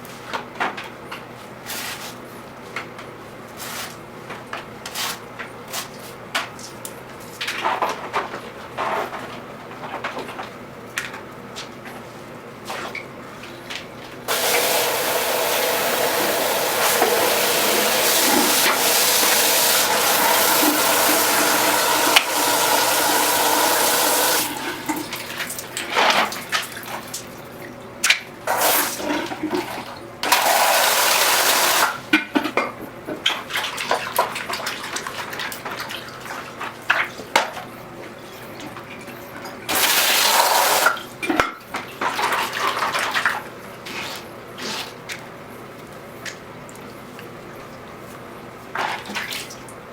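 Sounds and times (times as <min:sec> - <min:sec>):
tap water running into basin: 0:14.3 - 0:27.3, 0:28.5 - 0:32.0, 0:39.7 - 0:41.0.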